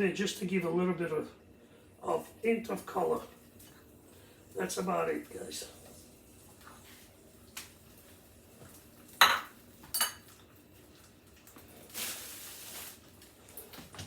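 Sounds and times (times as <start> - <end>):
metal utensil clinking cookware: 9.2 - 10.3.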